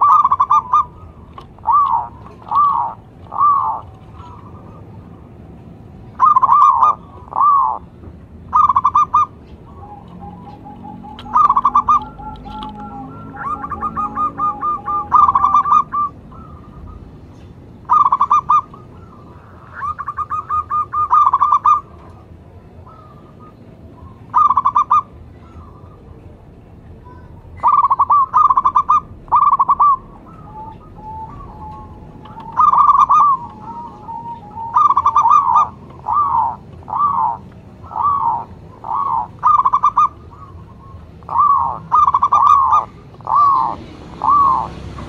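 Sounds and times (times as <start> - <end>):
low-pitched bird trilling: 0.0 - 5.1, 6.1 - 7.9, 8.5 - 22.0, 22.8 - 26.1, 27.0 - 44.8
doves cooing: 0.0 - 45.0.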